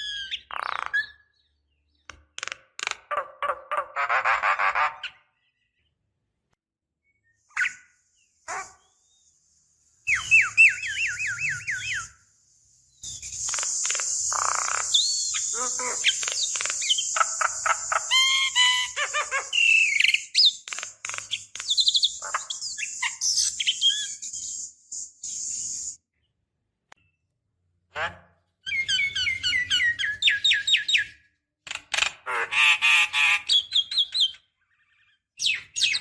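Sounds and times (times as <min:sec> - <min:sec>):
myna chattering calls and whistles: 0:13.0 - 0:26.0.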